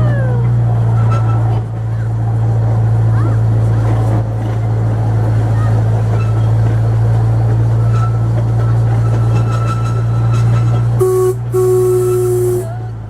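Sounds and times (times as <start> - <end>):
train engine drone: 0.0 - 13.0
train horn blasts: 11.0 - 13.0.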